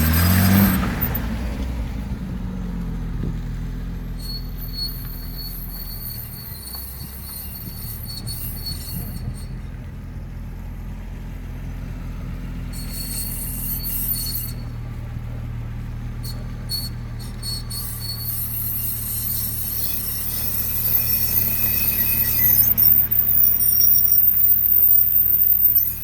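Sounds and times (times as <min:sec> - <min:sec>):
high-pitched whistling squeal: 0:00.0 - 0:01.3, 0:04.0 - 0:09.8, 0:12.5 - 0:15.0, 0:16.2 - 0:26.0
car engine humming low: 0:00.0 - 0:07.6, 0:09.0 - 0:17.4.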